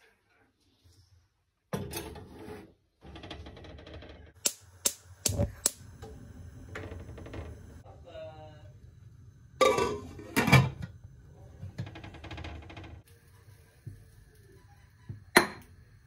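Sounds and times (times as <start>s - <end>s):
kitchen rustling and clatter: 0.8s - 4.4s, 9.6s - 13.0s.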